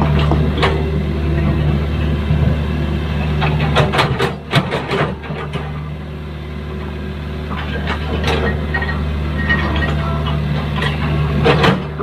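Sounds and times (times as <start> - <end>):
diesel engine running: 0.0 - 12.0
metallic clanks and knocks: 7.6 - 12.0.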